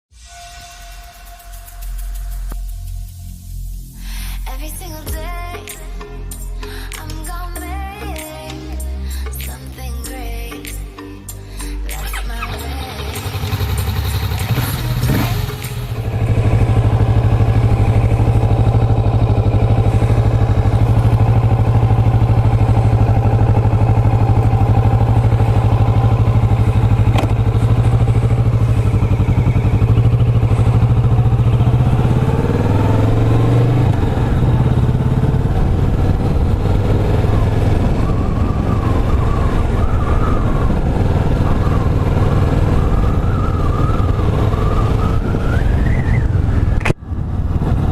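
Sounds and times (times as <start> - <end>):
motorcycle engine running: 12.0 - 47.9.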